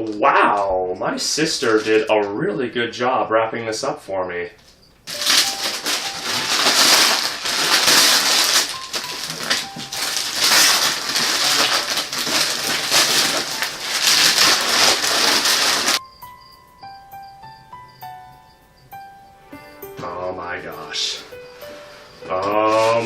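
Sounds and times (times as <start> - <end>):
wrapping paper tearing and crumpling: 1.5 - 2.1, 5.1 - 16.0.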